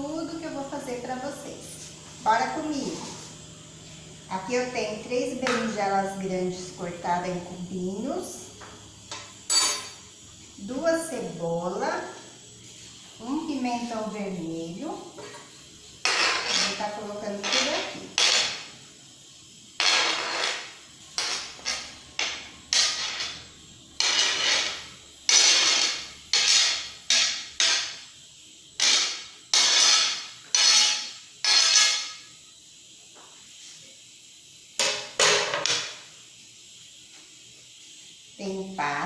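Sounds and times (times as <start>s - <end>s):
vegetables scraping into dish: 15.2s - 18.7s, 19.8s - 28.0s, 28.8s - 32.2s.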